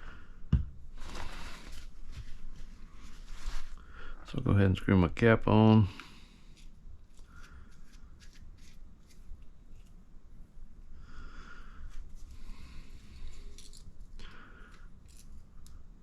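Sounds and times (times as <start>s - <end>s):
soft breaths: 0.0s - 4.4s, 5.8s - 8.3s, 10.8s - 15.8s.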